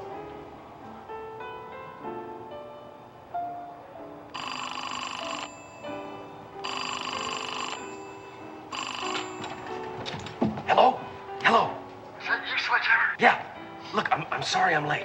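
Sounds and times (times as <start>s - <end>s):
soft background music: 0.0s - 15.0s
payphone ringing: 4.4s - 10.4s.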